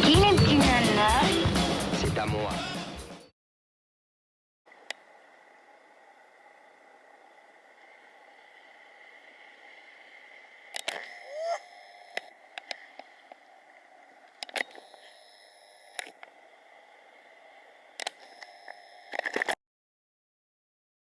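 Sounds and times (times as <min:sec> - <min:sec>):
camera handling clicks and knocks: 0:04.7 - 0:19.6
faint hum: 0:04.7 - 0:19.6
steady hiss: 0:04.7 - 0:19.6.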